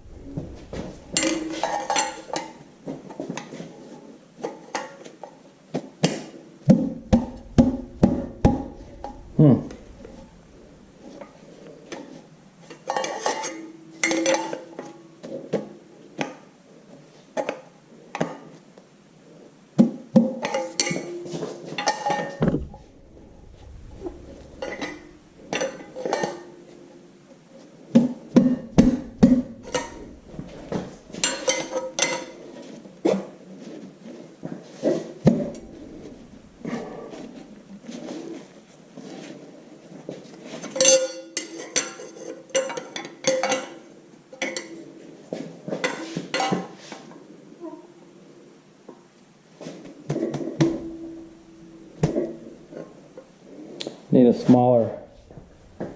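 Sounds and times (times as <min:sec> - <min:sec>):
metal clinks and knocks: 0:00.0 - 0:02.6, 0:28.6 - 0:32.3.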